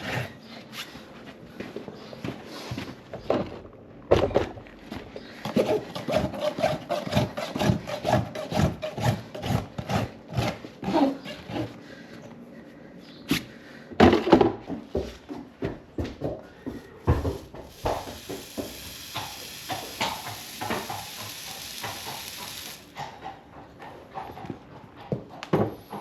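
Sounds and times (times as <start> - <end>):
rasp scraping hoof: 16.6 - 23.4.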